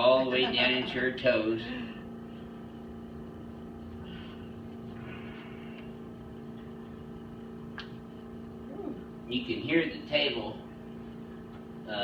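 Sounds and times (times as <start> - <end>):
air compressor humming: 0.0 - 12.0.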